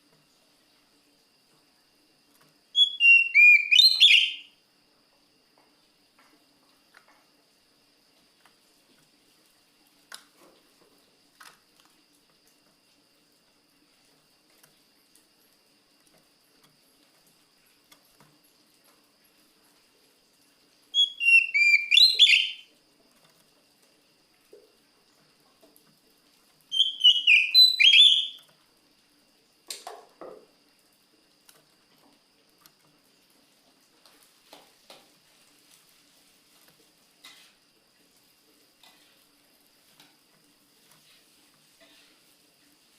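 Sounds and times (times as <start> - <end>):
bird singing whistled phrases: 2.8 - 4.5, 20.9 - 22.7, 26.7 - 28.4
faint ticks: 9.9 - 20.5, 30.6 - 35.9.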